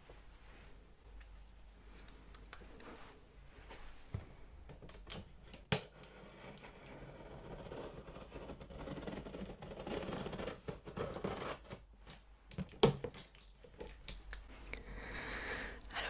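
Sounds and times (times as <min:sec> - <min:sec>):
cardboard and tape rustling: 0:04.9 - 0:14.3.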